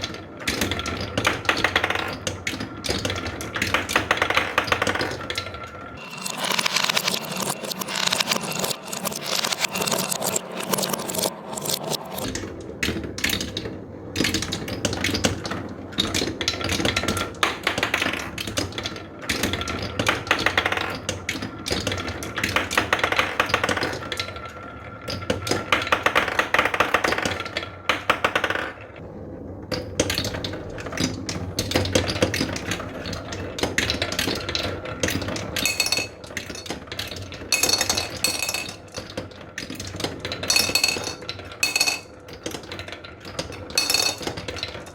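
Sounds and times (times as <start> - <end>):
marbles clattering down a run: 1.4 - 12.3, 31.6 - 44.9.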